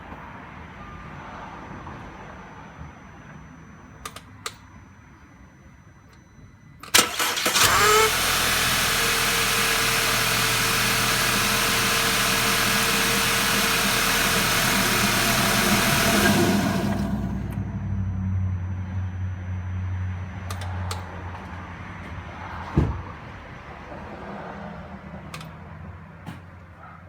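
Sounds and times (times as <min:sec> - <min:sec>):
car engine starting: 0:06.8 - 0:18.9
car engine running: 0:07.0 - 0:18.2.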